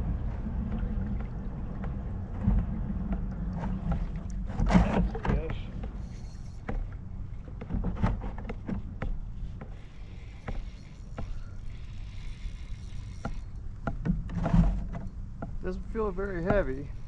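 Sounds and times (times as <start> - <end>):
steady low rumble: 0.0 - 17.0
fishing reel clicks and knocks: 5.5 - 6.9, 9.0 - 14.1.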